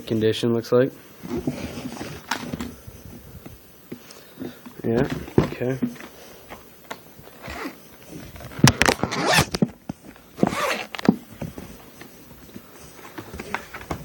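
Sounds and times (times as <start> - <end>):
rustling or scraping: 1.2 - 3.6, 7.2 - 14.0.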